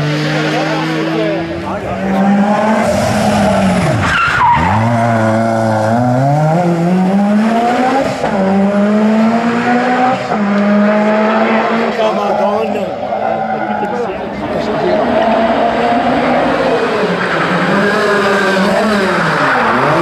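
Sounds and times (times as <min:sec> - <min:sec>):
rally car engine revving: 0:00.0 - 0:20.0
tyre squeal: 0:02.9 - 0:05.5.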